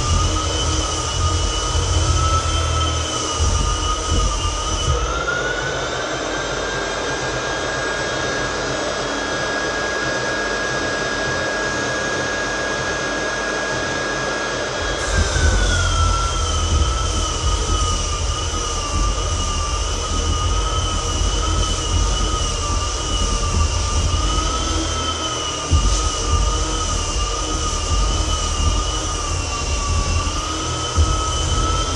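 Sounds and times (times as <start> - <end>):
floor edger sanding: 0.0 - 7.1, 13.6 - 31.9.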